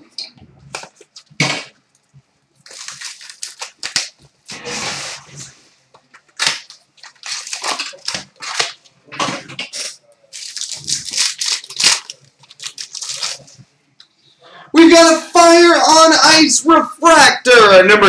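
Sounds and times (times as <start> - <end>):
foil wrappers crinkling and tearing: 2.6 - 4.2, 6.2 - 8.8, 9.6 - 13.6.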